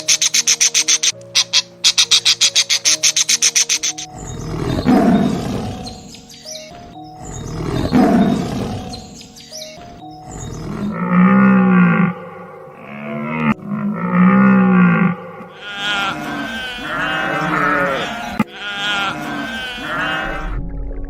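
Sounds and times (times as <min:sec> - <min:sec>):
background music: 0:00.0 - 0:21.0
rough roar-like animal calls: 0:04.3 - 0:06.0, 0:07.4 - 0:09.0, 0:10.4 - 0:20.6
cow mooing: 0:10.6 - 0:20.6.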